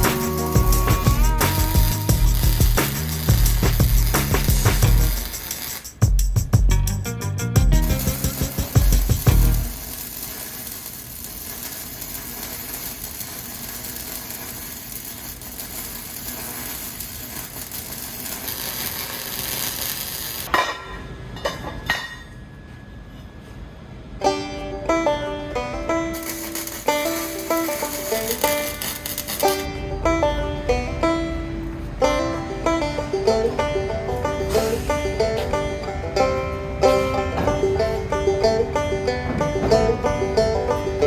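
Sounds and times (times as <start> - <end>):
arc welder crackling sizzle: 0.0 - 6.1, 7.8 - 20.5, 26.1 - 29.7
plucked banjo-like music: 6.6 - 9.7, 24.2 - 28.8, 29.5 - 41.0.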